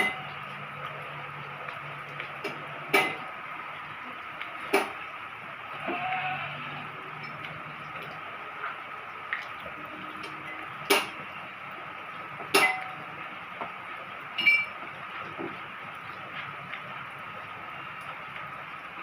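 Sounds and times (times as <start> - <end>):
rain hissing: 0.0 - 19.0
tableware clinking: 14.4 - 14.7.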